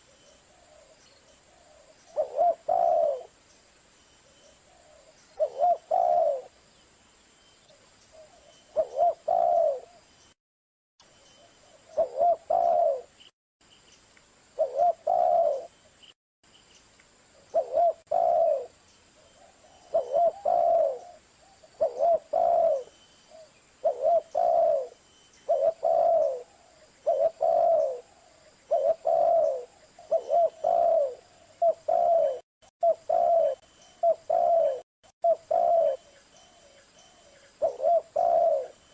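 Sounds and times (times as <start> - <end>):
dove cooing: 0.0 - 3.4, 4.7 - 6.5, 8.1 - 10.0, 11.6 - 13.1, 14.6 - 15.7, 17.5 - 18.8, 19.4 - 38.9.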